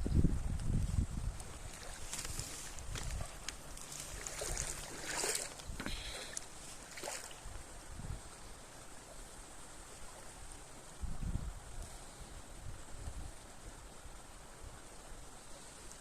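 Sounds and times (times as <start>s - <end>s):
wind gusting on microphone: 0.0s - 6.1s, 7.0s - 8.4s, 10.9s - 13.9s.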